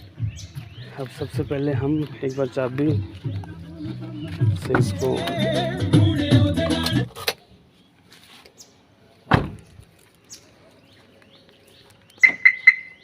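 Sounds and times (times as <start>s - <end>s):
music: 0.0s - 1.4s, 2.6s - 7.3s.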